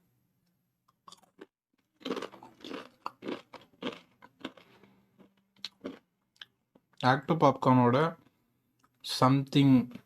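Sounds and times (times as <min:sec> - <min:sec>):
chewing crunchy chips: 0:00.9 - 0:06.8.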